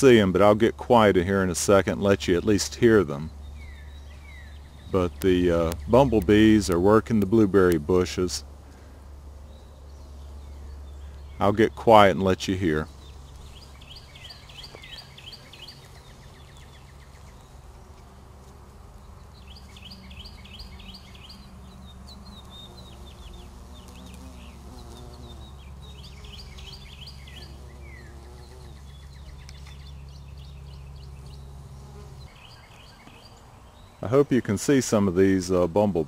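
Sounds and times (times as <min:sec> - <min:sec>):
bumblebees buzzing: 0:00.0 - 0:33.9
songbird trilling: 0:01.9 - 0:06.9, 0:09.5 - 0:17.9, 0:19.0 - 0:34.0.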